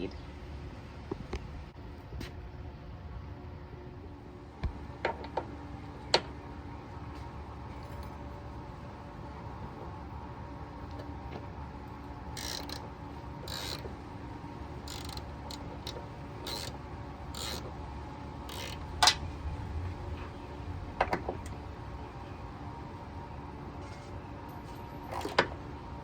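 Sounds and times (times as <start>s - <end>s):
low steady hum: 0.0s - 26.0s
ratchet wrench rasping: 12.4s - 13.9s, 14.8s - 17.7s, 18.4s - 19.2s.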